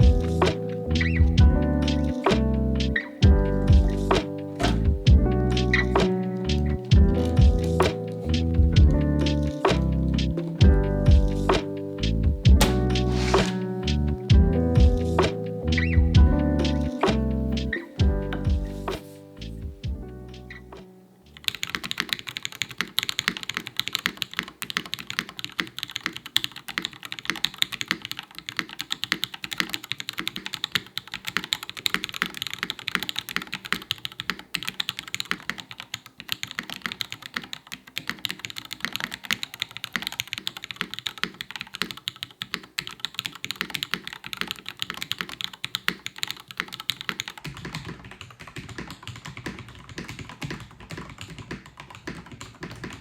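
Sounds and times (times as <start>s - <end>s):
mechanical keyboard typing: 21.4s - 53.0s.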